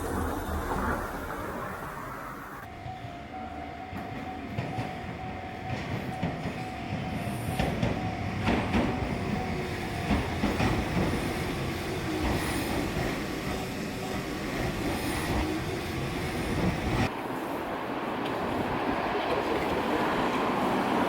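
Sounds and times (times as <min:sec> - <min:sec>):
electric train wheels clicking: 0:03.9 - 0:17.4.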